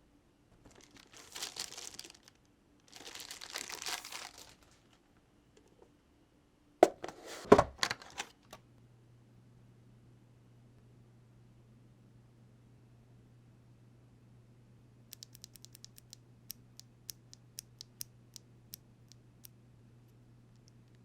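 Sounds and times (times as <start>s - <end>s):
plastic packaging crinkling: 0.6s - 5.0s.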